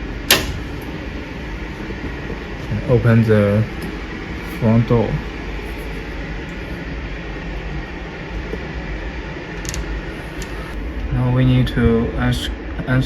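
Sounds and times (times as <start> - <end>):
air-conditioning hiss: 0.0 - 13.0.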